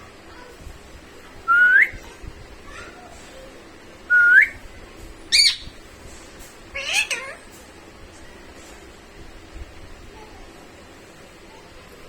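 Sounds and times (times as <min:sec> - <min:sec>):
parrot whistling: 0:04.1 - 0:04.6, 0:05.3 - 0:05.7
parrot harsh call: 0:05.3 - 0:05.7, 0:06.8 - 0:07.4.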